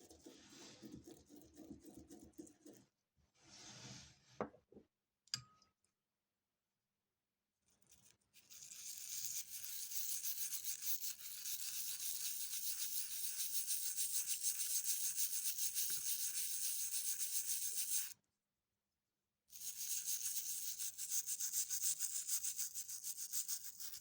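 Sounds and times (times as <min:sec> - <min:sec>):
brush scrubbing coin: 0:07.9 - 0:18.2, 0:19.5 - 0:24.0.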